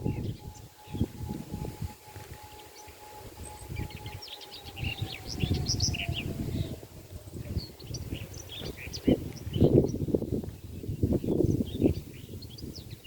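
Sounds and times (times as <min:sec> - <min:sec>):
distant siren winding down: 0:00.0 - 0:08.2
songbirds chirping: 0:00.0 - 0:13.0.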